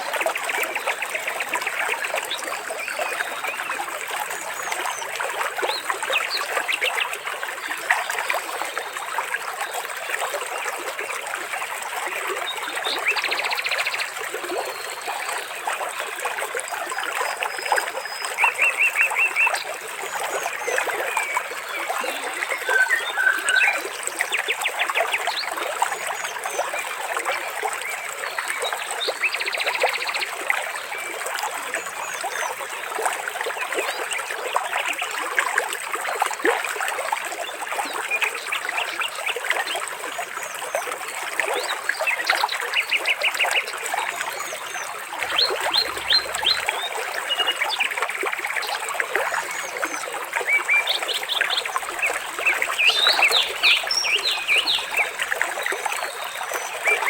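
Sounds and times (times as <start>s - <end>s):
water trickling and splashing: 0.0s - 57.0s
birds chirping: 45.2s - 47.4s, 52.0s - 55.2s.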